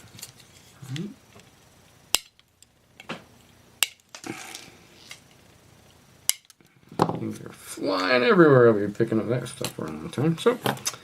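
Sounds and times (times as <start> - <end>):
wire cutters snipping metal: 2.1 - 2.4, 6.3 - 6.6.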